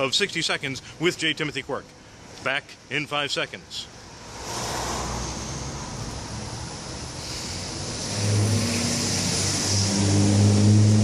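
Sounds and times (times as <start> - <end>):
road traffic noise: 0.0 - 11.0
vehicle engine droning nearby: 3.9 - 11.0.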